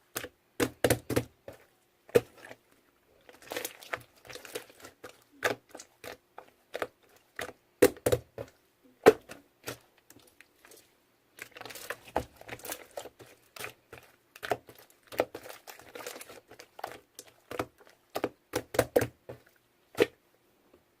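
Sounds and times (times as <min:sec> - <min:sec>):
faint steady hum: 0:00.0 - 0:21.0
crinkling rustles: 0:09.6 - 0:18.0.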